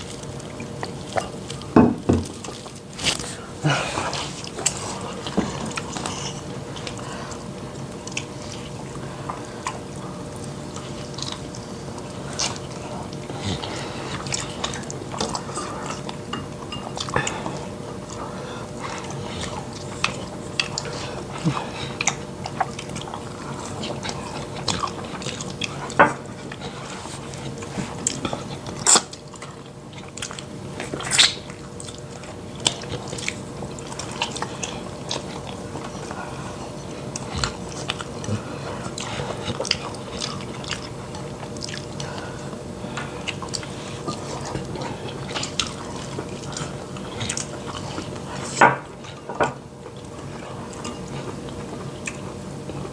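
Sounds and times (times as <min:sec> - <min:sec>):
wet chewing and biting: 0:16.9 - 0:52.9.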